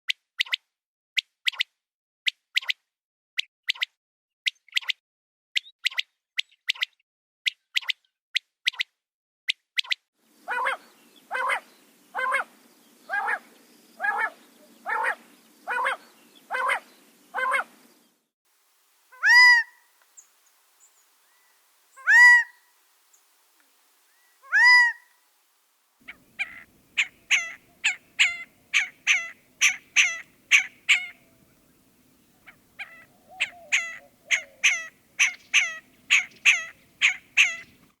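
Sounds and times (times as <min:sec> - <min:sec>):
quail calling: 0:10.5 - 0:12.5, 0:13.1 - 0:17.8, 0:19.1 - 0:20.0, 0:21.3 - 0:22.8, 0:24.0 - 0:25.2, 0:26.0 - 0:37.9.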